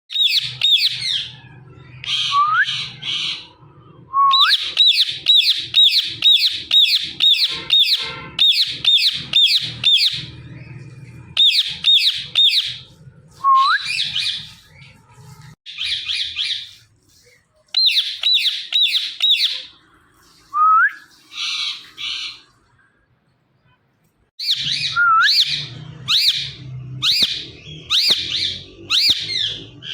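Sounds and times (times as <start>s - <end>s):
parakeet screeching: 4.5s - 10.4s, 24.4s - 29.9s
parakeet squawks: 4.5s - 10.4s, 11.2s - 12.9s, 17.8s - 19.8s, 24.4s - 29.9s.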